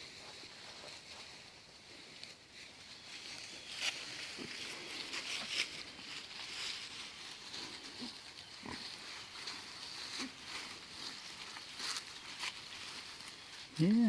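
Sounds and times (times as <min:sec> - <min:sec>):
rustles and crackles: 0:00.0 - 0:14.0
pigs grunting: 0:07.6 - 0:09.3.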